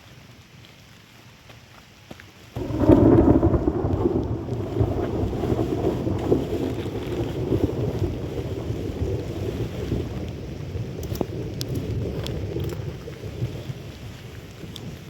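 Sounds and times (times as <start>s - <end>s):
rolling thunder: 2.6s - 15.0s.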